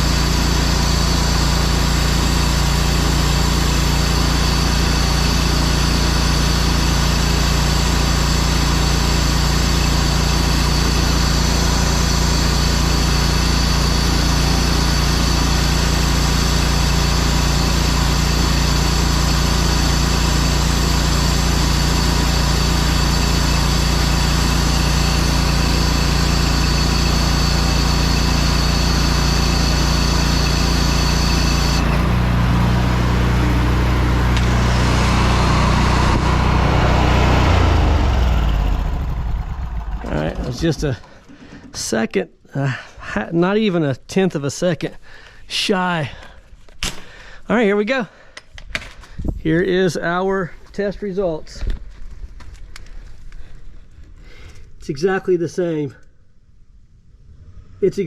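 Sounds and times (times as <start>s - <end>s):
pressure washer engine running: 0.0s - 41.8s.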